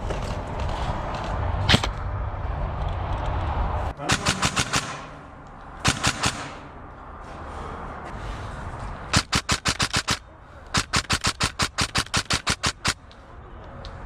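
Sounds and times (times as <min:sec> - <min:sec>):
airsoft gun firing: 0:04.0 - 0:05.2, 0:05.8 - 0:06.7, 0:09.1 - 0:13.0.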